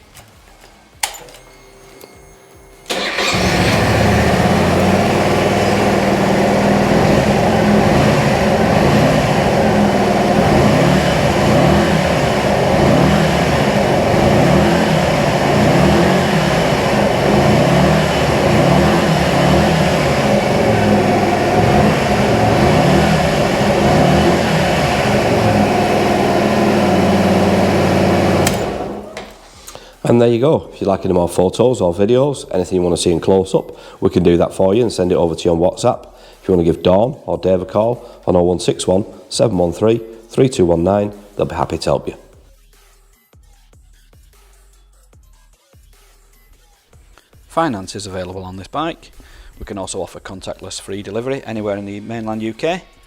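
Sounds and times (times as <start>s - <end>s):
motorcycle engine starting and idling: 0.0s - 29.6s.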